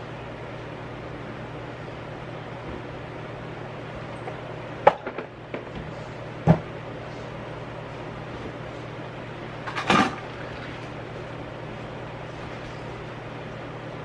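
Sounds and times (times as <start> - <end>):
objects clattering: 9.7 - 10.6.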